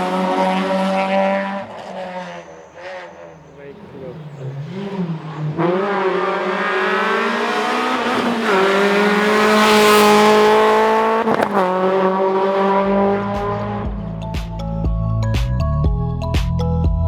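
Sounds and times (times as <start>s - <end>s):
rally car accelerating: 0.0s - 14.7s
music: 13.8s - 17.0s.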